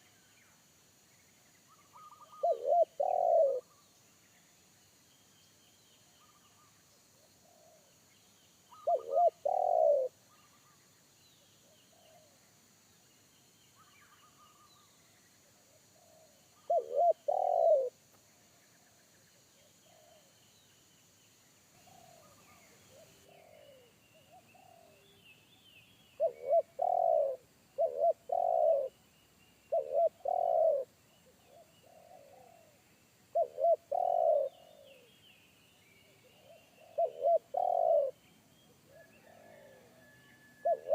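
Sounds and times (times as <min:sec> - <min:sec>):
small birds chirping: 0:00.0 - 0:12.6, 0:13.2 - 0:39.7
doves cooing: 0:02.0 - 0:03.6, 0:08.7 - 0:10.1, 0:16.0 - 0:17.9, 0:21.8 - 0:25.0, 0:26.2 - 0:28.9, 0:29.7 - 0:30.9, 0:33.4 - 0:35.1, 0:36.3 - 0:38.2, 0:38.9 - 0:40.9.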